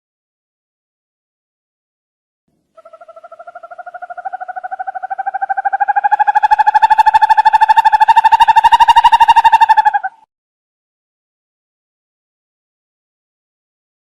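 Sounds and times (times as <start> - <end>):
owl trilling: 2.8 - 10.3.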